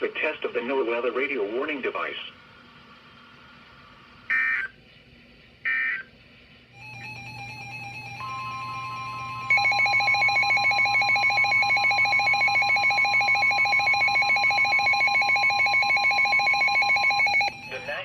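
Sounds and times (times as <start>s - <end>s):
pulsing two-tone warble: 6.8s - 18.0s.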